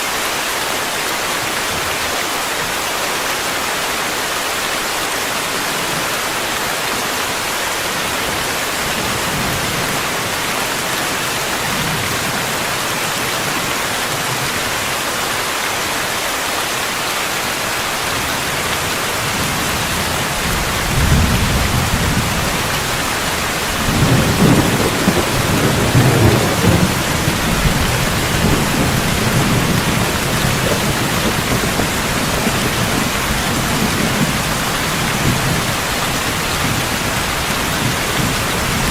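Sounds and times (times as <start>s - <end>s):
steady rain falling: 0.0s - 38.9s
rolling thunder: 19.5s - 38.9s.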